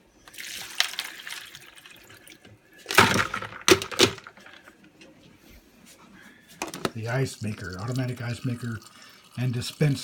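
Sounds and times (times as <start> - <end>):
ice cubes clattering into bowl: 0.3 - 2.0, 2.9 - 4.5
faint water trickle: 7.0 - 10.0.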